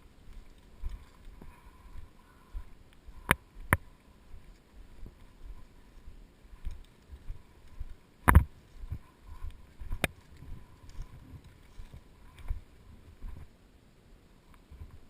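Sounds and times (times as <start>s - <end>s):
footsteps: 0.0s - 13.6s.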